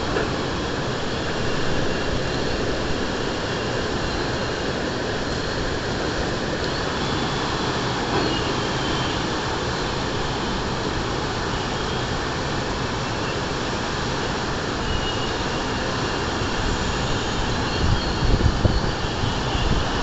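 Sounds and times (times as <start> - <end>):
strong wind blowing: 16.5 - 20.0.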